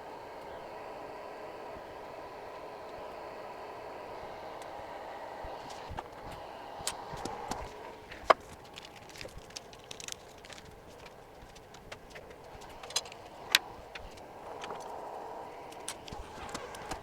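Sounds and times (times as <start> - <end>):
small tools clicking and tapping: 5.6 - 15.0.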